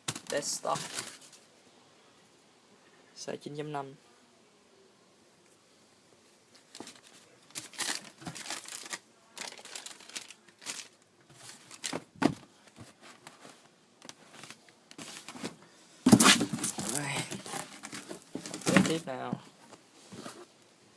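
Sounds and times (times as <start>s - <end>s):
packaging rustling and crinkling: 0.0s - 1.4s, 6.6s - 20.5s.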